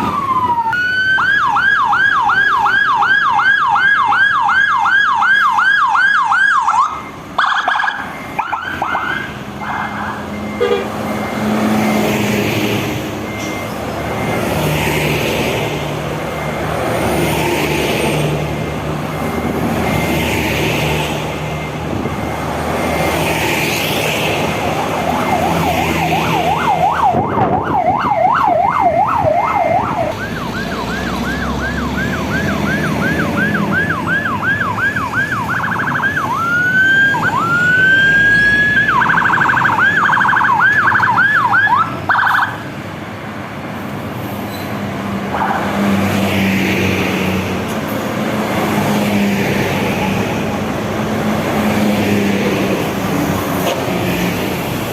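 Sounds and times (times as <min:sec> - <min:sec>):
electronic siren yelping and whooping: 0:00.0 - 0:12.7, 0:18.5 - 0:42.6
traffic noise: 0:00.0 - 0:54.9.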